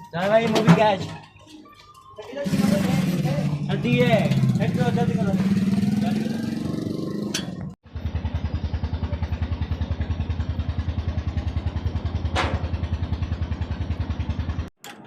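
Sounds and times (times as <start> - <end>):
engine idling: 7.5 - 14.7.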